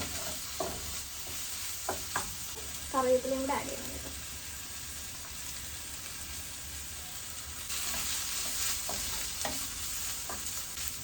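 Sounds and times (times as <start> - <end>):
spoon scraping and tapping pan: 0.0 - 2.4
onions sizzling in hot oil: 0.0 - 11.0.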